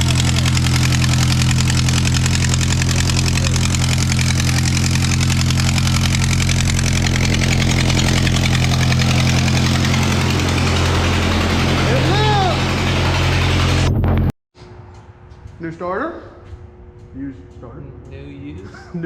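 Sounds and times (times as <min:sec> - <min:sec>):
tractor engine running: 0:00.0 - 0:14.3.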